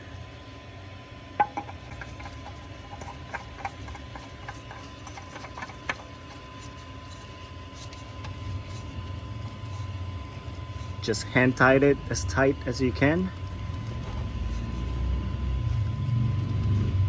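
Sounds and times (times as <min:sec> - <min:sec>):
low steady hum: 0:00.0 - 0:17.0
oil filter clicks and taps: 0:01.4 - 0:06.4.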